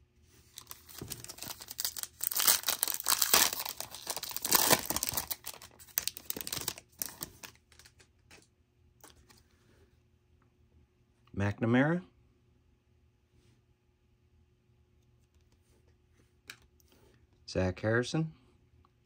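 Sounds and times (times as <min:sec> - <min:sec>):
foil pack tearing and crinkling: 0:00.6 - 0:07.9.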